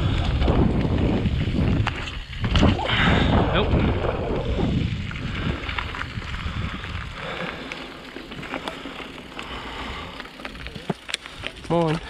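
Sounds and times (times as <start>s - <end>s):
wind on microphone: 0.0s - 7.6s
bike clicks and rattles: 0.0s - 12.0s
tyre and suspension rumble: 0.0s - 12.0s.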